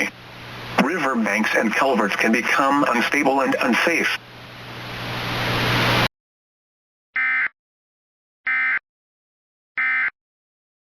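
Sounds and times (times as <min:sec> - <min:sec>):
static hiss: 0:00.0 - 0:06.1.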